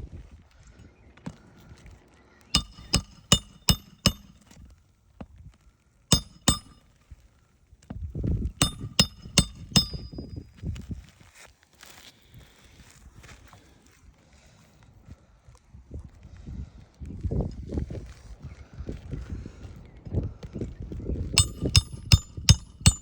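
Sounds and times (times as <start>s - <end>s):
hammer striking metal: 2.6s - 4.4s, 6.1s - 6.8s, 8.6s - 10.4s, 21.4s - 23.0s.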